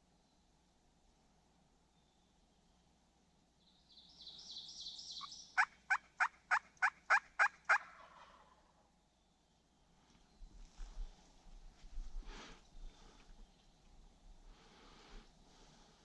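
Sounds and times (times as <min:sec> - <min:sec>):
turkey yelps: 0:05.2 - 0:08.7.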